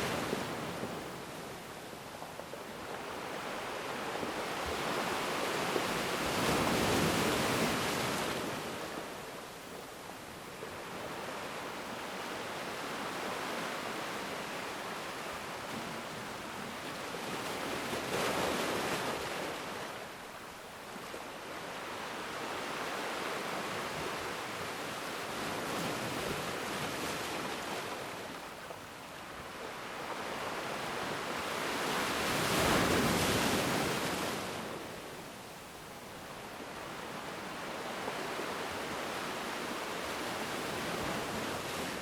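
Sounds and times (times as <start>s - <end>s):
ocean waves breaking: 21.2s - 34.9s.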